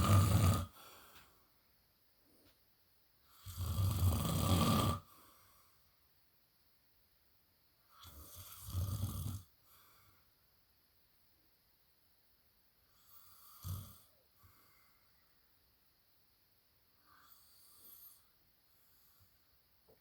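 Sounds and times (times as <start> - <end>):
man snoring: 0.0 - 0.8, 3.3 - 5.1, 8.0 - 9.5, 13.2 - 14.2.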